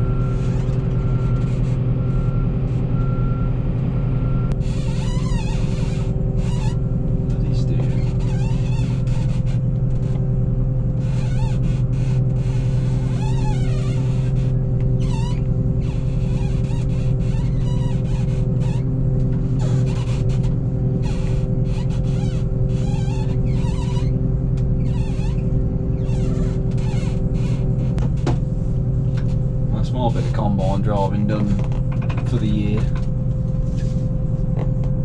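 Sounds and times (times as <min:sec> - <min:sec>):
combine harvester humming: 0:00.0 - 0:35.0
whining drives: 0:00.0 - 0:35.0
high wavering squeak: 0:19.6 - 0:24.2, 0:24.8 - 0:27.8.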